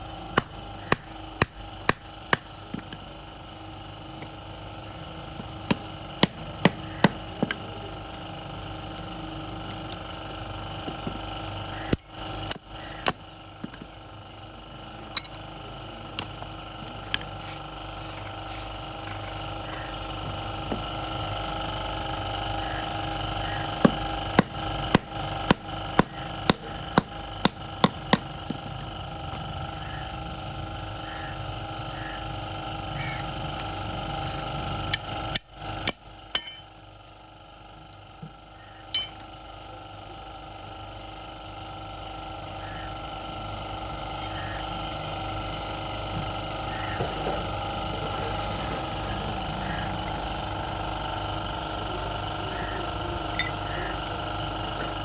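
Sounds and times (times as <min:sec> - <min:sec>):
steady background hum: 0:00.0 - 0:55.0
metal tools tapping on metal: 0:11.9 - 0:12.3, 0:15.2 - 0:15.4, 0:34.9 - 0:36.7, 0:38.9 - 0:39.2, 0:52.8 - 0:53.6.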